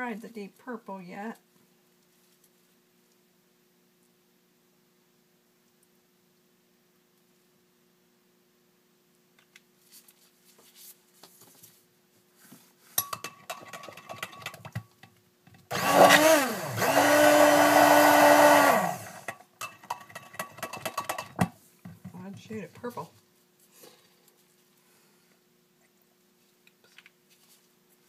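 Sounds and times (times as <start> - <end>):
clinks of handling: 13.0 - 14.6
stick blender whirring: 15.7 - 19.4.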